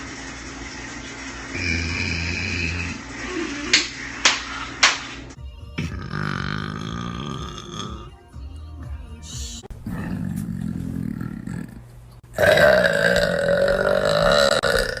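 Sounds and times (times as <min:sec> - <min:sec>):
music: 0:05.3 - 0:11.0
woman burping: 0:05.8 - 0:08.1, 0:11.1 - 0:15.0.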